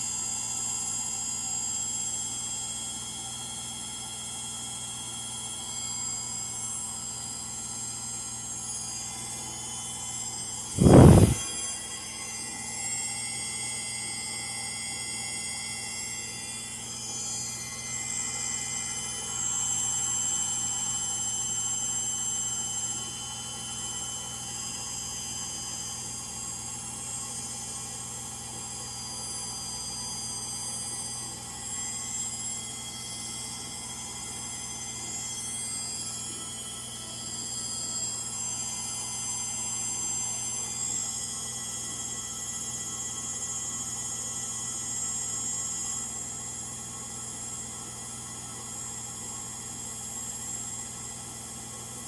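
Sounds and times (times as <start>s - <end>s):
low motor hum: 10.8s - 11.6s
washer spin whine: 10.8s - 11.7s.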